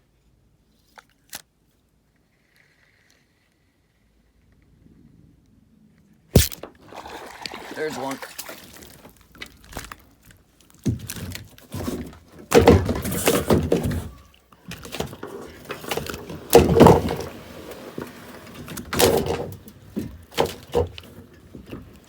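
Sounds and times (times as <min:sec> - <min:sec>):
fish thrashing against kayak: 0:06.4 - 0:10.2.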